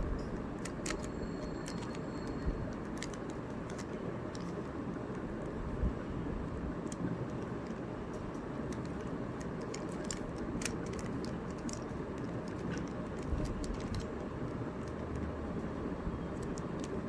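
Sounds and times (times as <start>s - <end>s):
low background rumble: 0.0s - 17.0s
plastic puzzle cube clicking: 0.6s - 2.0s, 2.6s - 4.5s, 8.7s - 14.2s, 16.3s - 17.0s.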